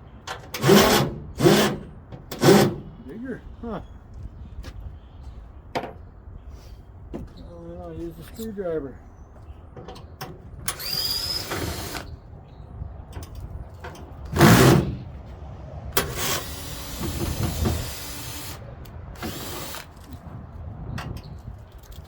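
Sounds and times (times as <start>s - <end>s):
power screwdriver running: 10.7s - 12.1s, 16.0s - 18.6s, 19.2s - 19.9s.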